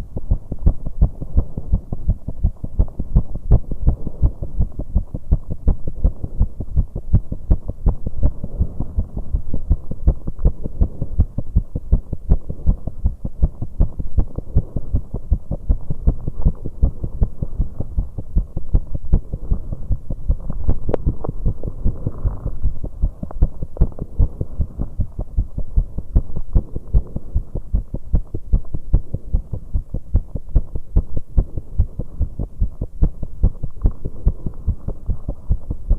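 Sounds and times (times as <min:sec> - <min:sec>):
faint hum: 0:00.0 - 0:35.9
heart beating fast: 0:00.0 - 0:35.9.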